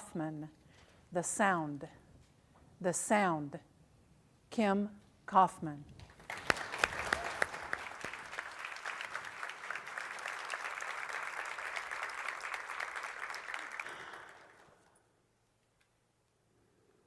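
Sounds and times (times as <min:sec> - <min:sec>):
audience applauding: 0:06.1 - 0:15.0.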